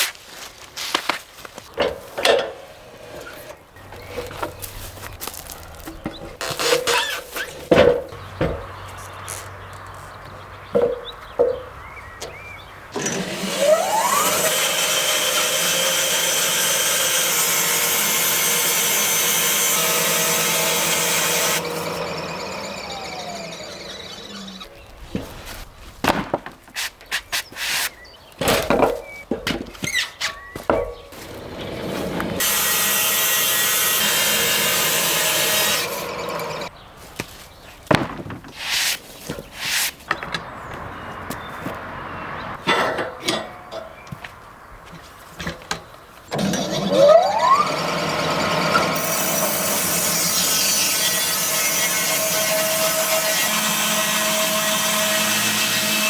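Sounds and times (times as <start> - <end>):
saw blade cutting wood: 2.2 - 8.0, 13.0 - 24.9, 26.8 - 28.0, 31.2 - 36.7, 38.5 - 40.0, 46.4 - 56.0
power tool whining: 13.0 - 25.0, 31.2 - 36.7, 46.3 - 56.0
short scraping: 26.6 - 28.0, 38.5 - 41.8.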